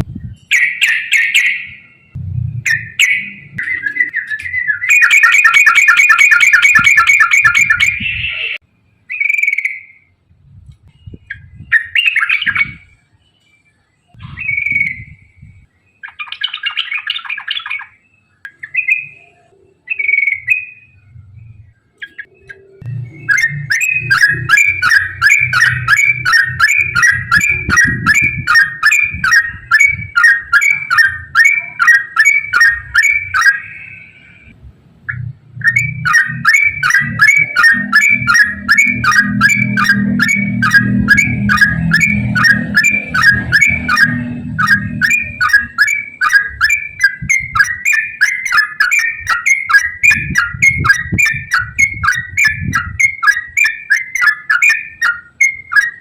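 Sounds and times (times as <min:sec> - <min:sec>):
bird singing rapid whistled notes: 0:00.1 - 0:10.2, 0:10.9 - 0:56.0
low hum: 0:01.8 - 0:04.9, 0:22.4 - 0:30.2, 0:34.2 - 0:47.8.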